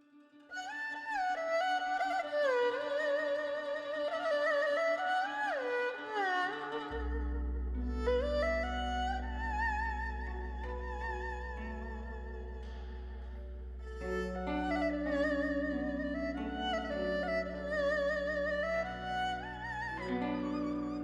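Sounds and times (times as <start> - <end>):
bowed string melody: 0.0 - 21.0
low sustained bass: 7.0 - 21.0.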